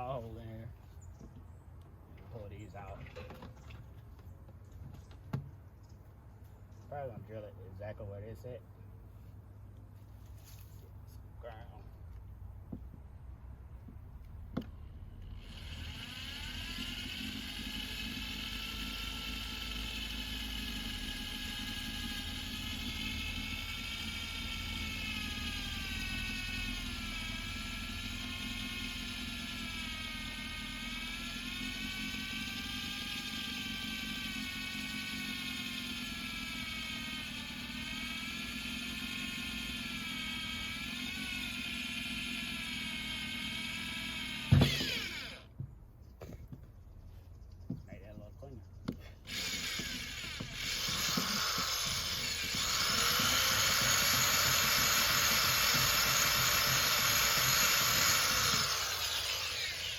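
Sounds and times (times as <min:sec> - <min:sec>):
electric drill whining: 0:15.2 - 0:45.5, 0:49.0 - 0:59.9.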